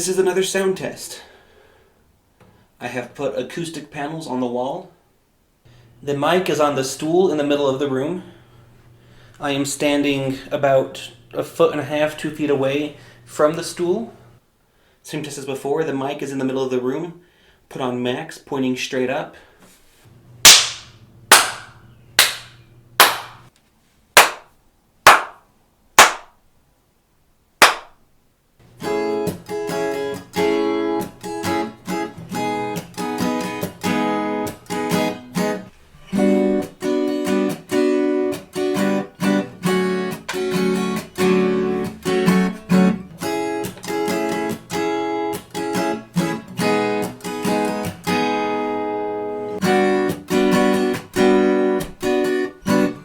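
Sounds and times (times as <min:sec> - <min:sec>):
hand claps: 0:20.5 - 0:23.5, 0:24.2 - 0:24.5, 0:25.1 - 0:25.4, 0:26.0 - 0:26.4, 0:27.6 - 0:28.0
guitar strummed in chords: 0:28.7 - 0:53.0.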